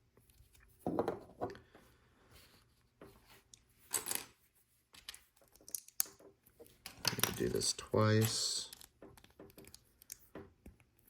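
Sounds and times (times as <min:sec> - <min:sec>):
plastic bricks clicking: 0:05.0 - 0:06.2, 0:06.8 - 0:10.8.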